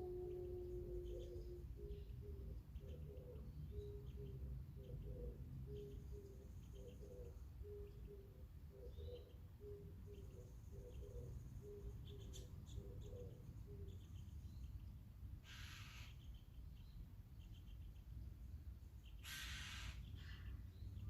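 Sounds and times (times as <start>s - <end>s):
dove cooing: 0.0s - 13.9s
small birds chirping: 0.2s - 21.0s
crow cawing: 15.4s - 16.1s, 19.2s - 20.5s.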